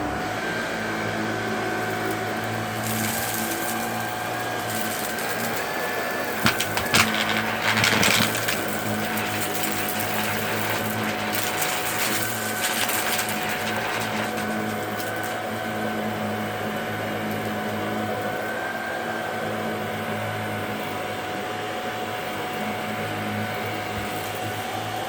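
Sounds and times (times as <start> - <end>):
vacuum cleaner running: 0.0 - 25.0
debris crackling in vacuum: 1.9 - 16.1.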